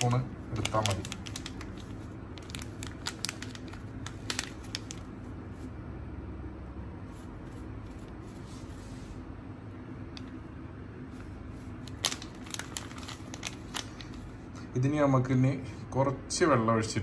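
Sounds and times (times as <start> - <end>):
spoon scraping powder packet: 0.0 - 5.1
faint steady hum: 0.0 - 17.0.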